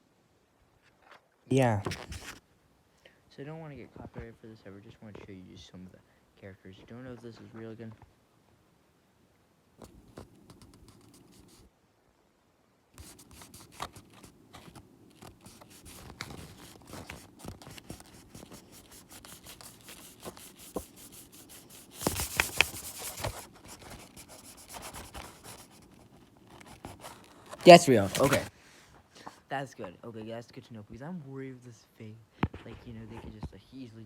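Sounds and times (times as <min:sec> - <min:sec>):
paper rustling and scratching: 0:01.8 - 0:02.4, 0:13.0 - 0:28.5
rubbing: 0:13.0 - 0:28.5.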